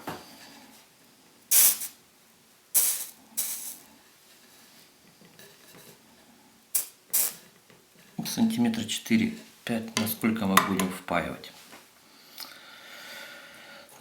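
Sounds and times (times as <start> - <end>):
soldering iron sizzling: 1.5 - 2.0, 2.7 - 3.8.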